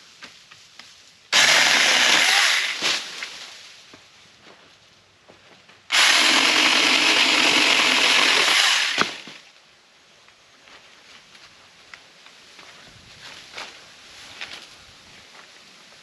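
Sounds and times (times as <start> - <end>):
electric chainsaw running: 1.4 - 2.8, 5.9 - 9.4.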